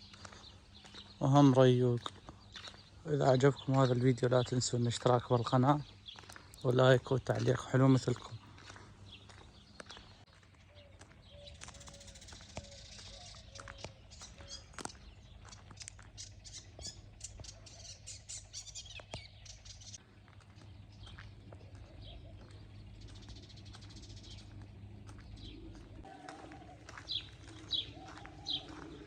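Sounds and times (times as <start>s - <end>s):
birds chirping: 0.0s - 29.0s
steady low rumble: 13.9s - 29.0s.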